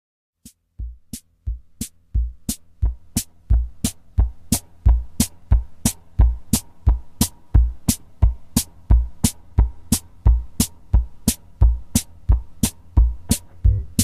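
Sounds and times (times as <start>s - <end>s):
background music with steady beat: 0.4s - 14.0s
faint low hum: 13.1s - 14.0s.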